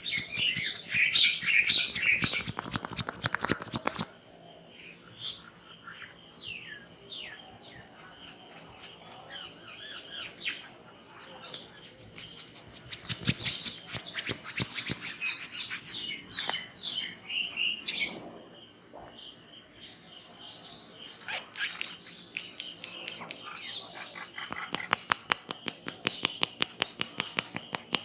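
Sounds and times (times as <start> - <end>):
sharp clicks and taps: 0.0 - 4.1, 12.2 - 15.1, 24.5 - 28.0
small birds chirping: 0.0 - 28.0.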